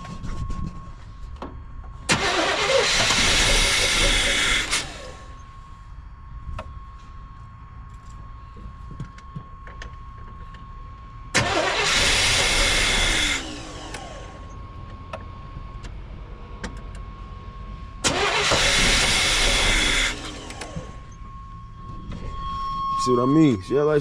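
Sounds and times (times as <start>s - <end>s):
car engine cranking on starter: 2.1s - 5.2s, 11.3s - 14.4s, 18.0s - 21.0s.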